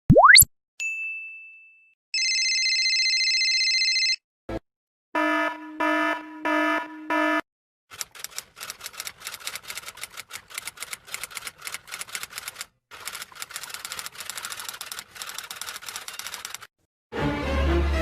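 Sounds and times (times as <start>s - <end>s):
rapid keyboard typing: 7.9s - 16.7s.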